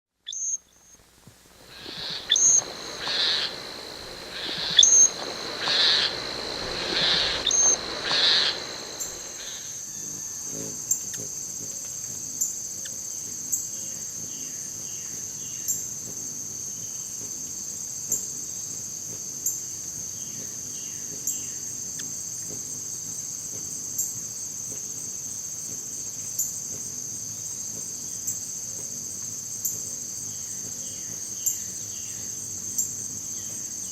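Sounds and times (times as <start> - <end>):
high-pitched insect trill: 0.3 - 33.9
loud noisy pulsing sound: 1.6 - 9.8.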